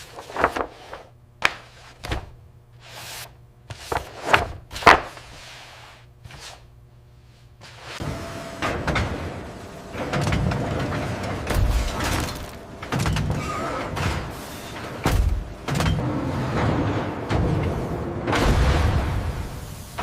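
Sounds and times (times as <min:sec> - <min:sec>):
machinery knocks and clunks: 0:15.0 - 0:19.2.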